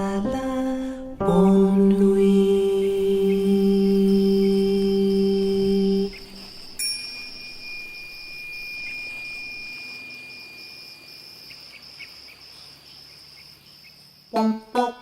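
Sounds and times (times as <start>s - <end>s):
plucked music: 0.0s - 6.5s, 14.4s - 15.0s
crickets chirping: 1.8s - 15.0s
thin steady tone: 1.9s - 15.0s.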